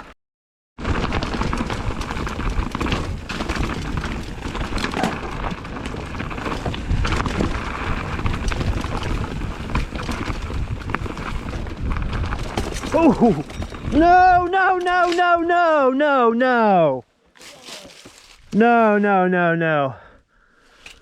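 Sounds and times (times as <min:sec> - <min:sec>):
tyres crunching over rock: 0:00.8 - 0:15.5, 0:17.3 - 0:18.6
bike rattling: 0:00.8 - 0:16.0.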